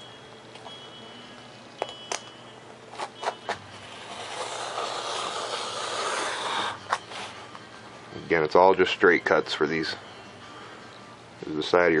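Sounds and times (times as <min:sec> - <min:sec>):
knife rasping through foam board: 0:03.9 - 0:07.3.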